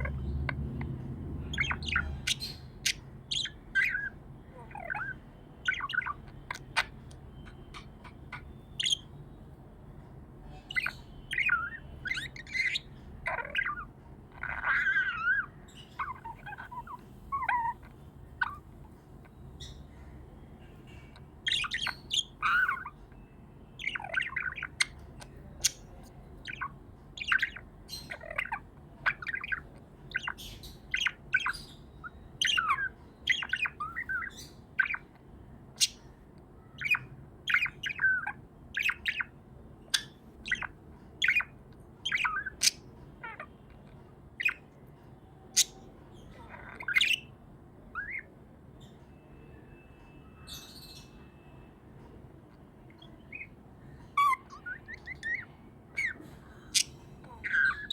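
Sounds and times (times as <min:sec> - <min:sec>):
budgie chirping and warbling: 0:00.0 - 0:09.4, 0:10.5 - 0:20.1, 0:20.7 - 0:48.9, 0:52.8 - 0:57.9.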